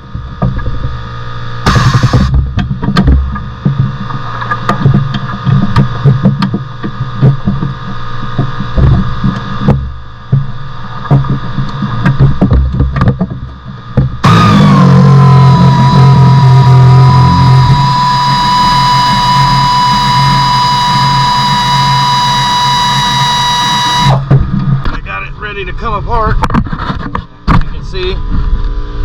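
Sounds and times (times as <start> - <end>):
steady low hum: 0.0 - 29.0
loud music: 1.7 - 2.3, 14.2 - 24.2.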